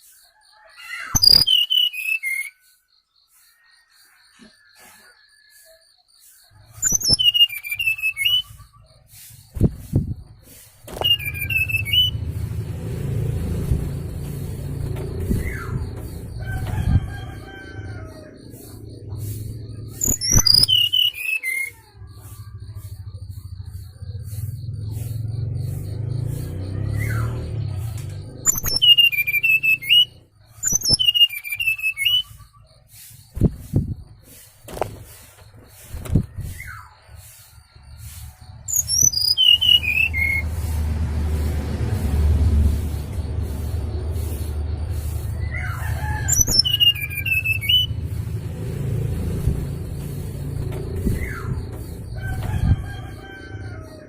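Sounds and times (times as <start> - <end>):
whistled bird call: 0.0 - 2.9, 4.4 - 9.9, 10.5 - 12.2, 15.2 - 25.1, 26.8 - 33.2, 38.0 - 40.4, 43.6 - 48.0
low rumble: 11.0 - 20.9, 39.8 - 54.0.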